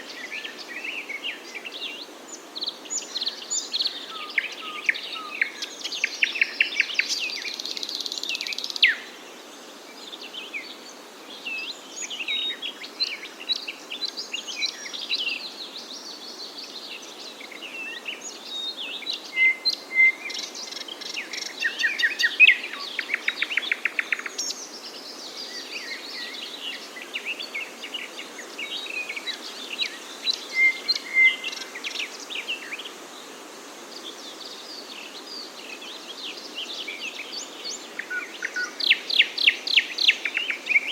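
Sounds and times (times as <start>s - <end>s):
faint steady hiss: 0.0s - 40.9s
songbirds chirping and singing: 10.0s - 33.1s, 34.1s - 40.9s.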